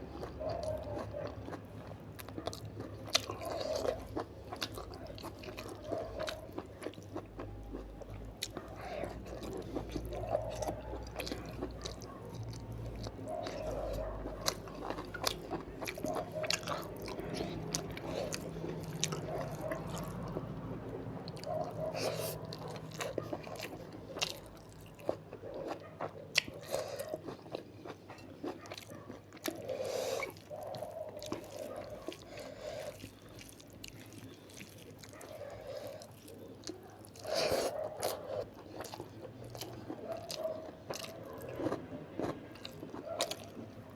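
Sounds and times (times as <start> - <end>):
close chewing with wet mouth sounds: 0.0 - 43.9.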